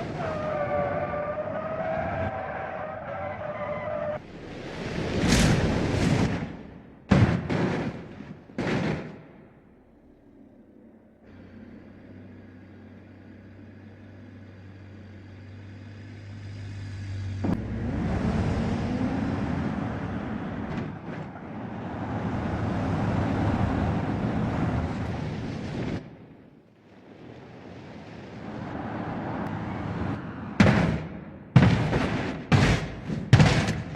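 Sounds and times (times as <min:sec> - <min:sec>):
vehicle engine revving: 0:11.2 - 0:25.2.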